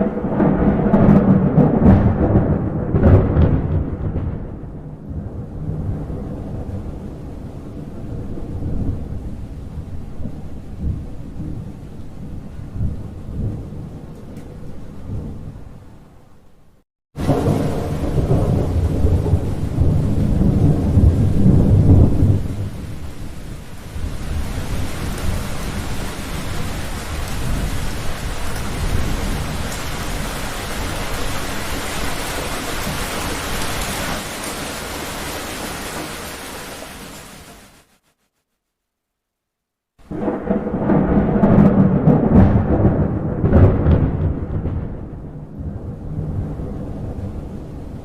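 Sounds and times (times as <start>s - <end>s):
heavy rain: 0.0s - 16.2s, 17.2s - 38.2s, 40.0s - 48.0s
thunder rumbling: 0.0s - 16.2s, 17.2s - 37.2s, 40.0s - 48.0s.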